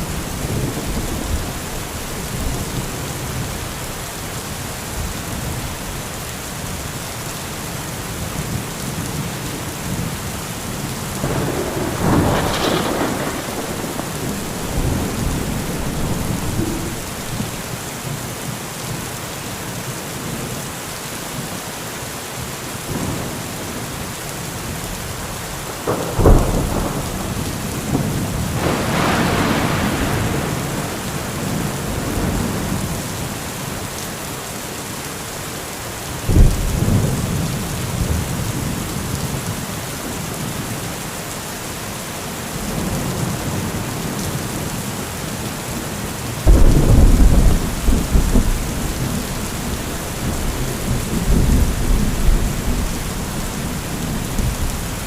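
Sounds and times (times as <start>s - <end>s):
low rolling thunder rumble: 0.0s - 4.0s, 10.9s - 17.7s, 25.7s - 33.0s, 46.4s - 55.0s
heavy rain: 0.0s - 55.0s
sharp thunderclap: 11.2s - 17.6s, 25.9s - 32.5s, 46.4s - 55.0s.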